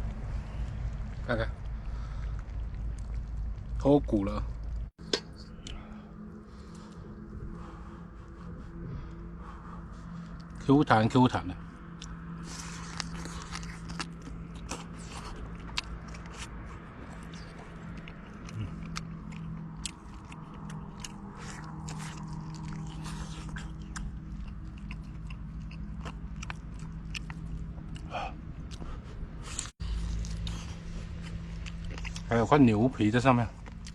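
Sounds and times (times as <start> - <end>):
steady low hum: 0.0 - 33.9
person chewing meat: 11.7 - 32.3, 33.6 - 33.9.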